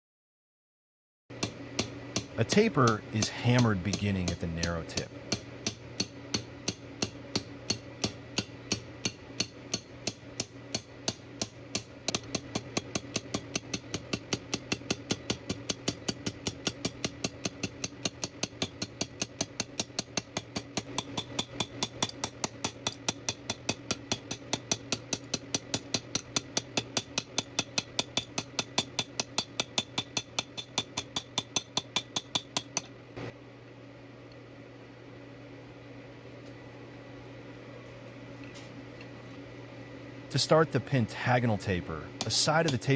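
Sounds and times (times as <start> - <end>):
steady low hum: 1.3 - 42.9
hammer striking metal tube: 1.4 - 4.4, 5.3 - 32.9.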